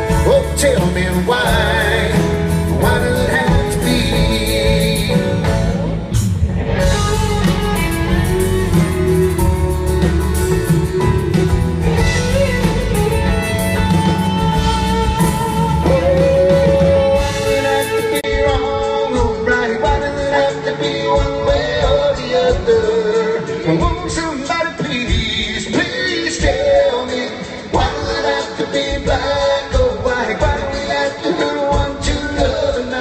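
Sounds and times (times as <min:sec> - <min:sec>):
guitar melody: 0:00.0 - 0:22.7
country band instrumental: 0:00.0 - 0:33.0.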